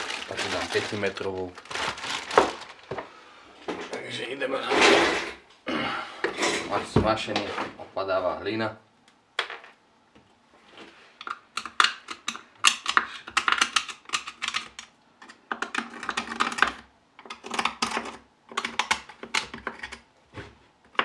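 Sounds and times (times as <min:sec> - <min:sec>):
hand tools clicking and tapping: 0:11.2 - 0:20.0.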